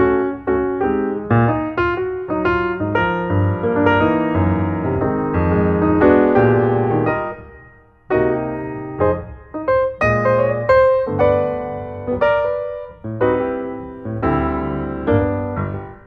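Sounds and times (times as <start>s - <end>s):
piano playing chords: 0.0s - 16.0s.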